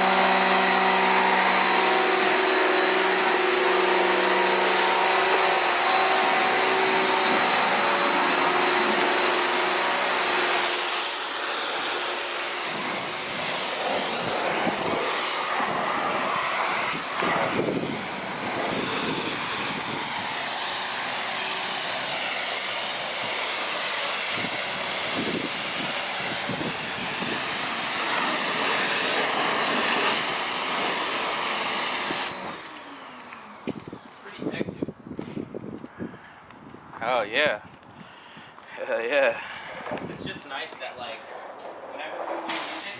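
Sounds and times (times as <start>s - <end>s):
motor hum: 0.0s - 23.8s
pressure washer jet hissing: 0.0s - 32.8s, 42.0s - 42.9s.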